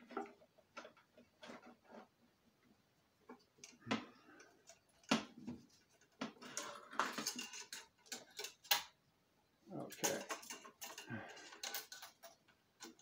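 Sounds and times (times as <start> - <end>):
metal parts clicking and knocking: 3.6 - 9.0, 9.7 - 13.0
metal scraping and rattling: 4.6 - 8.8, 9.7 - 13.0.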